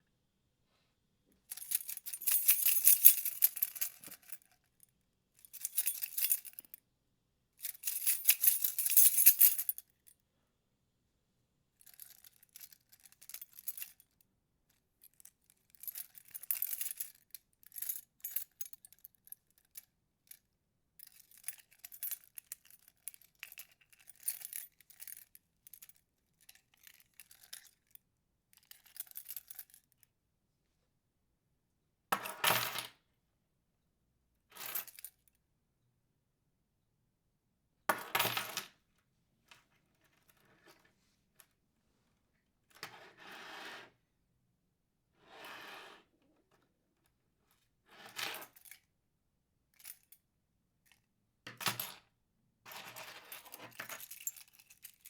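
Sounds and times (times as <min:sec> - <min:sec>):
keys jangling: 0:01.5 - 0:04.5, 0:05.6 - 0:06.7, 0:07.6 - 0:09.8, 0:53.4 - 0:55.0.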